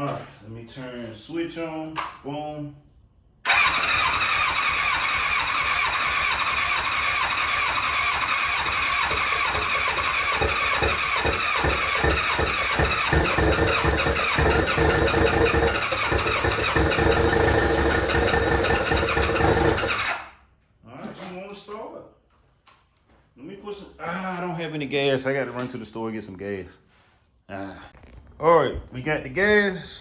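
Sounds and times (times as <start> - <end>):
electric starter cranking engine: 3.5 - 20.4.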